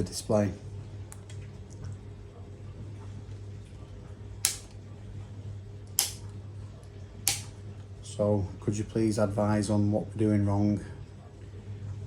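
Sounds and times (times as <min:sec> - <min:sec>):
steady low hum: 0:00.0 - 0:12.0
sharp click: 0:04.4 - 0:04.7, 0:06.0 - 0:06.2, 0:07.3 - 0:07.5.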